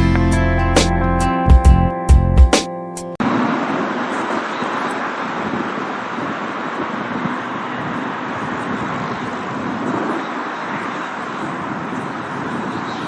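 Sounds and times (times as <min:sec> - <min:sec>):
jet engines roaring: 0:03.2 - 0:13.0.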